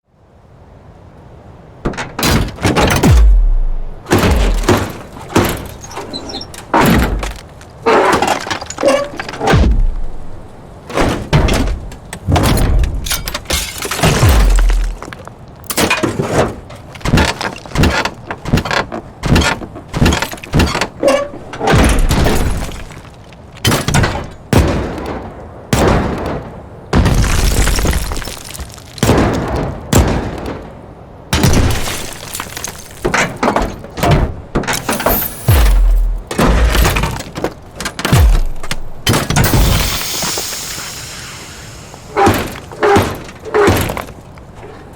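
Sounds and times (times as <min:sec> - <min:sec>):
background ambience: 0:00.1 - 0:44.9
metallic robot hits and clanks: 0:02.2 - 0:05.8, 0:06.8 - 0:07.4, 0:08.2 - 0:10.4, 0:12.4 - 0:15.1, 0:34.7 - 0:41.0
deep low boom: 0:03.0 - 0:04.8, 0:09.5 - 0:10.4, 0:35.5 - 0:37.1, 0:38.1 - 0:39.7.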